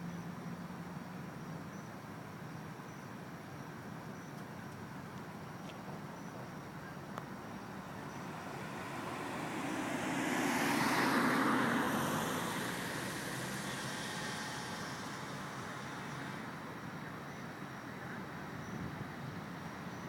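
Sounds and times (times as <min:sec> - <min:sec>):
car driving past: 0:07.2 - 0:17.9.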